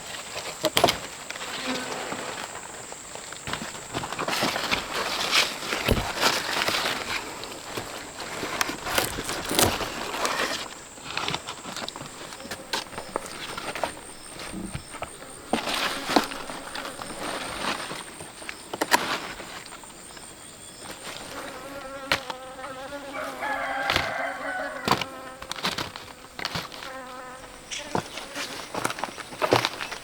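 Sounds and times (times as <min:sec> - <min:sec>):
handling knocks and rustles: 0:03.3 - 0:22.4, 0:23.4 - 0:30.0
flying insect buzzing: 0:11.7 - 0:17.8, 0:21.2 - 0:29.1.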